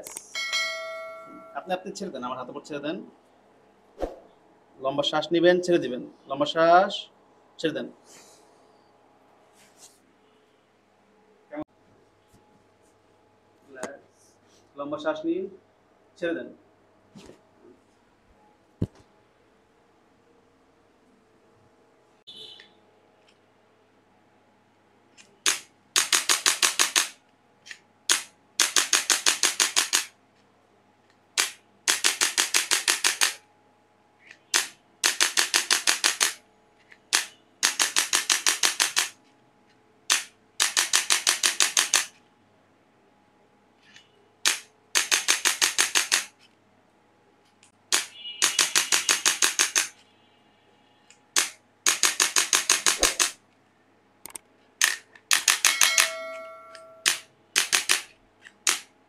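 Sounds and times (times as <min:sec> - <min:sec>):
rapid clicks of adjusting instrument: 0:25.1 - 0:30.1, 0:31.4 - 0:33.4, 0:34.2 - 0:39.3, 0:40.1 - 0:42.2, 0:43.8 - 0:46.5, 0:47.6 - 0:49.9, 0:51.3 - 0:53.4, 0:54.2 - 0:56.2, 0:57.0 - 0:58.9.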